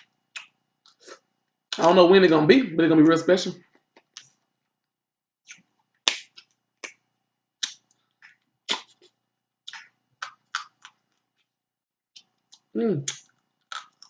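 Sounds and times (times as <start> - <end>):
crab shells cracking: 12.6 - 14.0.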